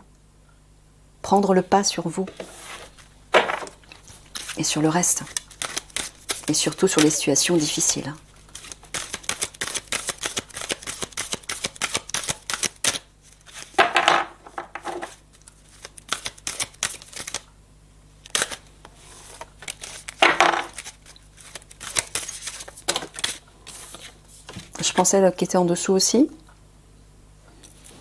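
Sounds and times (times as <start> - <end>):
cards clicking while shuffled: 3.4 - 4.6, 5.2 - 17.5, 18.3 - 18.6, 19.2 - 24.7.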